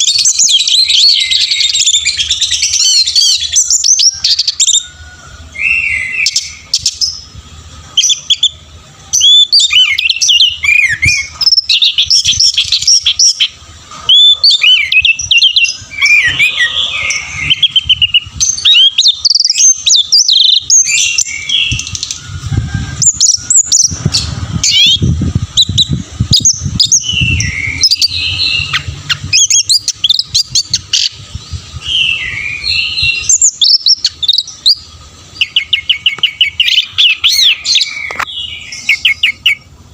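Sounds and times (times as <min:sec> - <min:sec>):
thrush singing whistled phrases: 0:00.0 - 0:07.4, 0:08.0 - 0:39.7
low rumble: 0:20.7 - 0:33.4.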